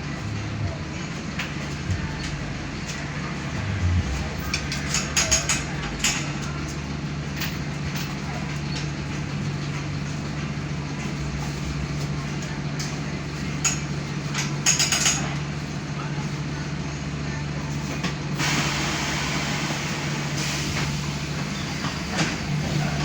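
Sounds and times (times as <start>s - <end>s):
bus diesel engine droning: 0.0s - 23.0s
sharp clicks and rattles: 1.4s - 6.8s.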